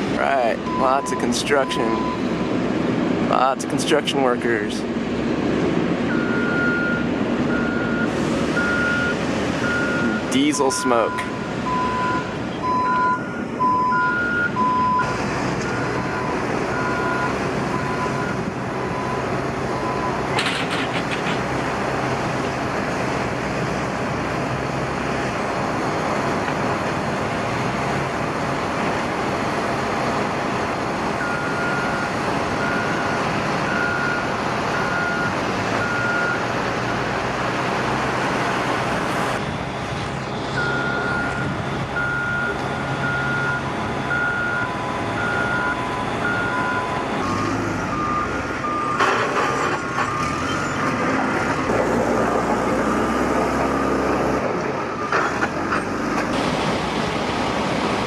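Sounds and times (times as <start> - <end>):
heavy machinery diesel engines: 0.0 - 58.0
reversing alarm beeps: 6.1 - 10.2, 10.9 - 20.2, 31.2 - 36.4, 40.6 - 50.8.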